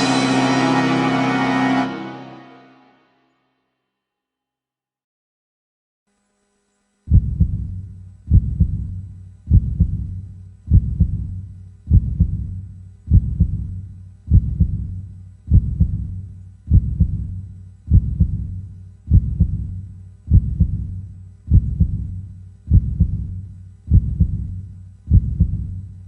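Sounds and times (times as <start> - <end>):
heartbeat thumps: 7.1 - 26.0.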